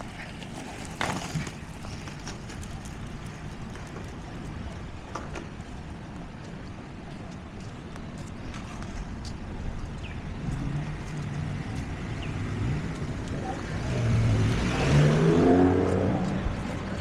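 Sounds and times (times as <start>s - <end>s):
motor engine passing by: 10.4s - 17.0s.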